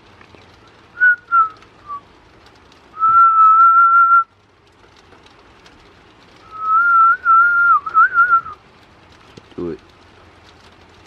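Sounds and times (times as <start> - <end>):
person whistling: 3.0 - 4.2, 6.5 - 8.6.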